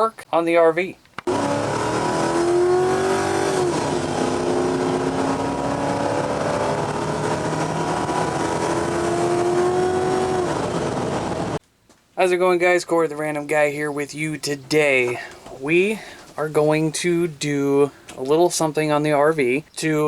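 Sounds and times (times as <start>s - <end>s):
car engine revving: 1.3s - 11.6s.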